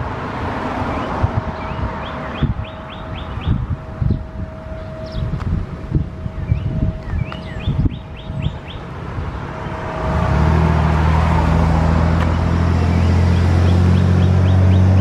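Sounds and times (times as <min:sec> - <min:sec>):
wind rumbling on microphone: 0:00.0 - 0:15.0
birds chirping: 0:00.8 - 0:05.4, 0:06.2 - 0:10.3, 0:12.2 - 0:15.0.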